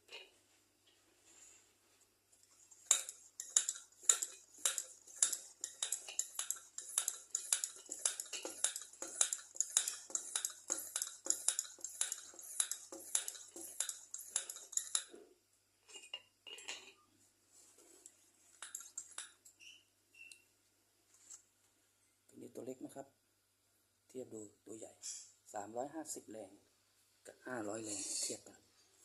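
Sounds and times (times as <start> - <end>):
lantern hand pump clicking: 2.9 - 15.1, 18.6 - 19.3.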